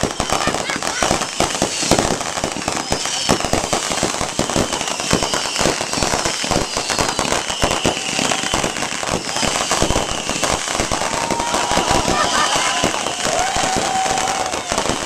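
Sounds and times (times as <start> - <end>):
fireworks bangs and crackles: 0.0 - 15.0
fireworks whistles falling in pitch: 0.0 - 15.0.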